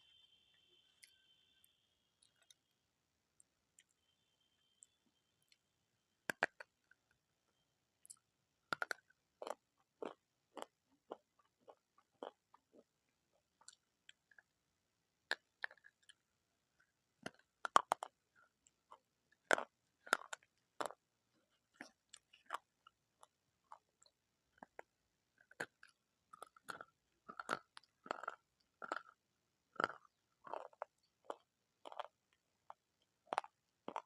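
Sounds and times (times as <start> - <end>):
chewing crunchy food: 6.3 - 7.2, 8.0 - 14.6, 15.3 - 16.3, 17.2 - 34.0.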